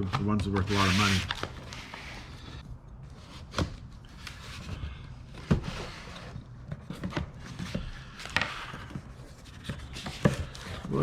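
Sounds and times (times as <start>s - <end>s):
rubbing and rustling: 0.0s - 4.8s.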